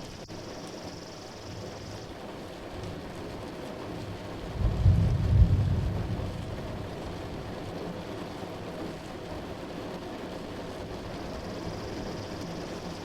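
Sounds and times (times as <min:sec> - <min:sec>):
steady rain: 0:00.0 - 0:13.0
low thunder rumble: 0:04.1 - 0:08.2.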